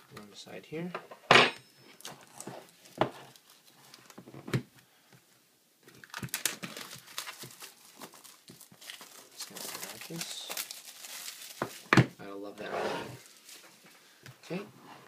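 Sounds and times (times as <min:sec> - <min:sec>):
packaging crinkling and rustling: 0:02.0 - 0:04.3, 0:05.9 - 0:12.2, 0:13.2 - 0:14.0.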